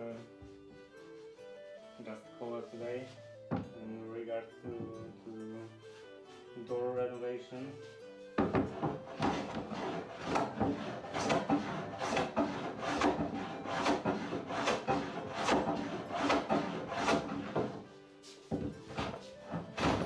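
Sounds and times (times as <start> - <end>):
sandpaper rubbing on wood: 8.8 - 17.8.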